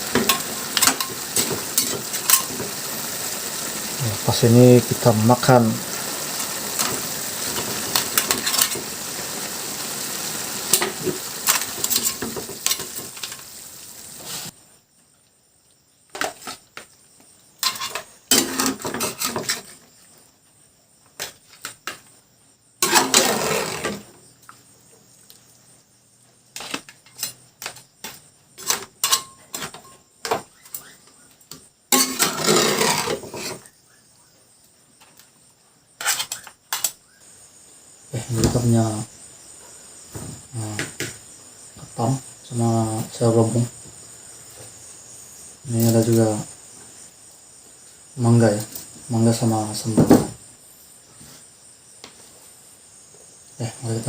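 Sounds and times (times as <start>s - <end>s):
food sizzling in a pan: 0.0s - 14.9s, 15.8s - 20.3s, 22.8s - 35.2s, 35.8s - 54.0s
dishes and cutlery clinking: 28.6s - 30.4s, 31.9s - 33.6s.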